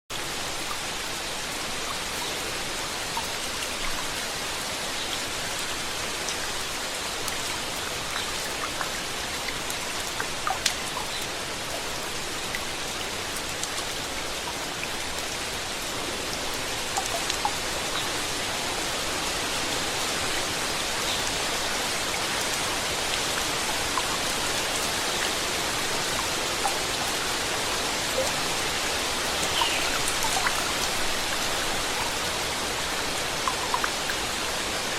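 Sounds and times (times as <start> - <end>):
steady rain falling: 0.1 - 34.9.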